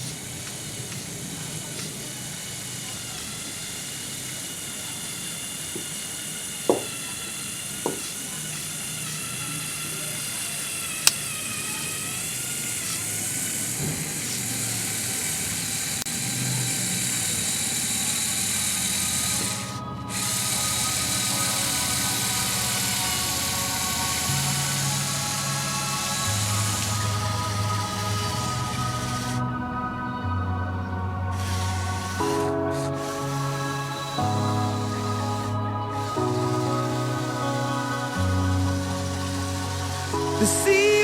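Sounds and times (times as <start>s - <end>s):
small electric motors whining: 0.0s - 41.0s
sharp clicks: 10.9s - 11.8s
music: 18.6s - 41.0s.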